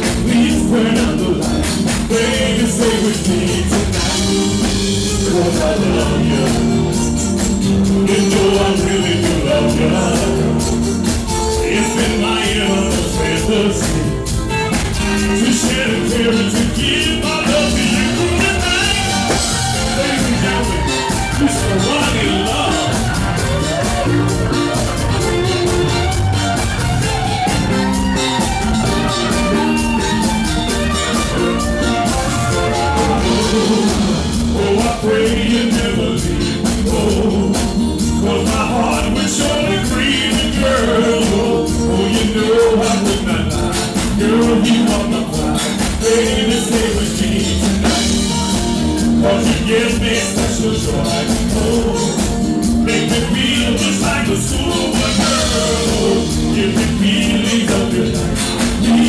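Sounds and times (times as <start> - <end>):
lead singer: 0.0 - 59.0
live band playing dance song: 0.0 - 59.0.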